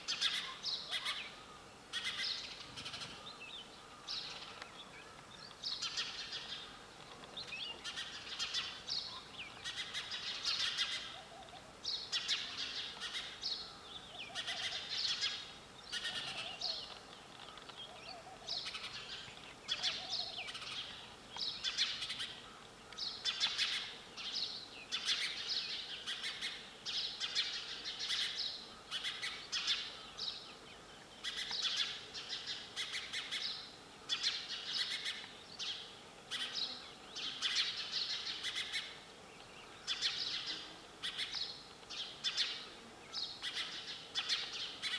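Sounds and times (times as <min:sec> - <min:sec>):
sparrows chirping: 0:00.0 - 0:44.9.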